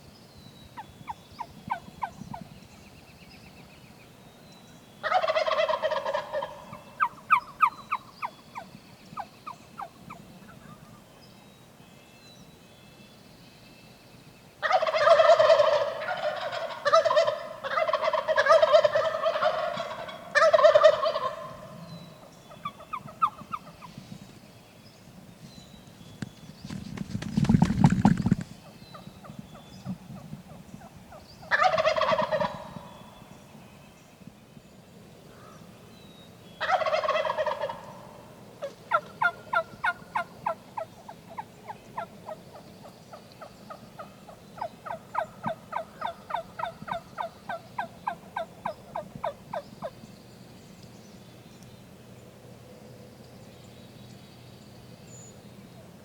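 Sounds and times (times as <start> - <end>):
wild turkey gobbling: 5.0 - 8.3, 14.6 - 21.8, 31.5 - 32.9, 36.6 - 42.4, 44.0 - 50.0
rustling noise: 25.4 - 28.7.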